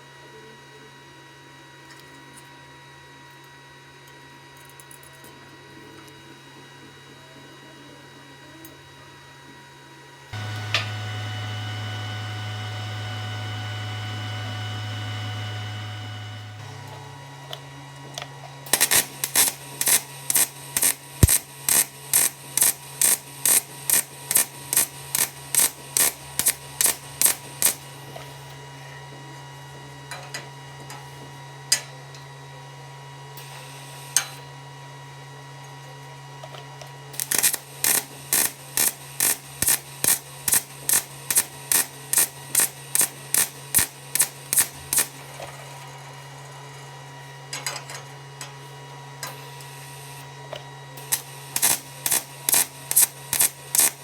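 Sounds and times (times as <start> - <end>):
low machine hum: 10.3 - 21.4
welder arc crackling bursts: 10.4 - 16.9, 18.7 - 28.0, 37.2 - 45.2, 49.5 - 50.2, 51.0 - 54.0.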